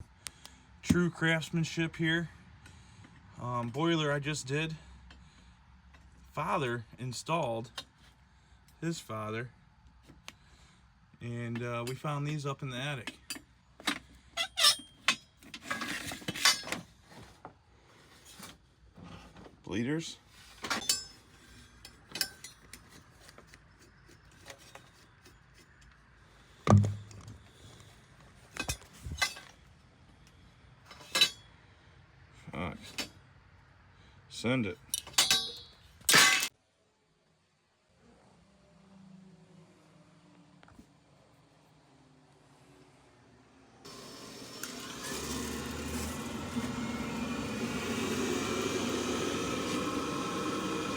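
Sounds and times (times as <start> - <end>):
metal radiator bleeders clinking: 20.7 - 21.3, 34.9 - 36.5
mechanical hum and rush: 45.2 - 50.9.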